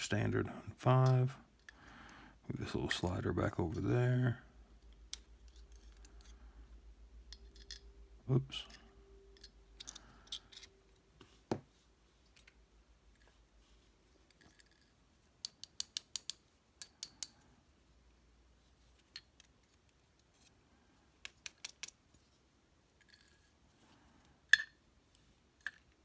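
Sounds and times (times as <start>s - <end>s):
small metal lock parts clinking: 5.1s - 6.4s, 7.3s - 7.9s, 9.4s - 10.8s, 21.2s - 22.0s.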